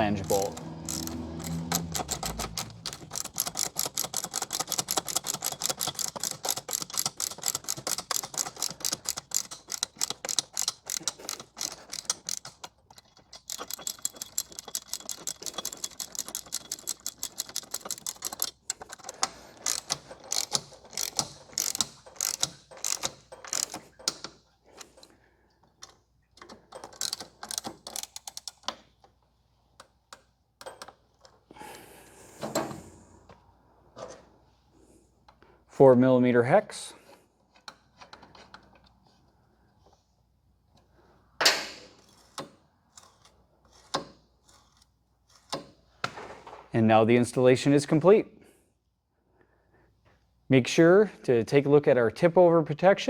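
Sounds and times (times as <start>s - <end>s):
ratchet wrench clicking: 0.0s - 24.3s.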